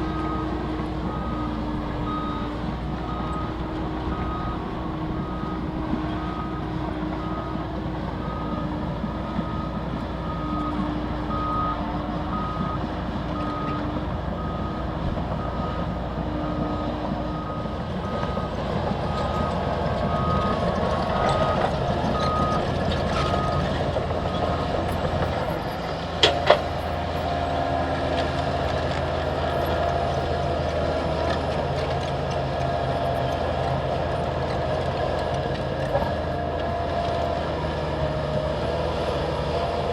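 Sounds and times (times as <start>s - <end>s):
diesel engines running: 0.0s - 39.9s
lower reversing alarm beeping: 0.1s - 6.6s, 7.2s - 13.8s, 14.4s - 25.9s
high reversing alarm beeping: 15.4s - 25.9s.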